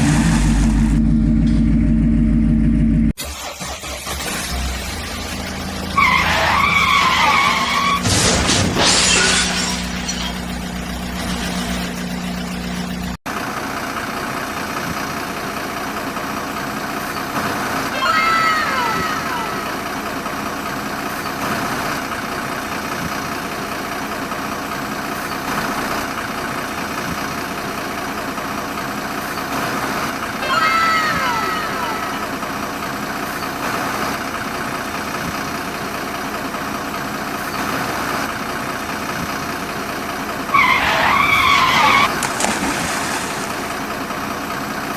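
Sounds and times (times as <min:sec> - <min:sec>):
engine hum: 0:00.0 - 0:44.9
vehicle engine running: 0:00.0 - 0:44.9.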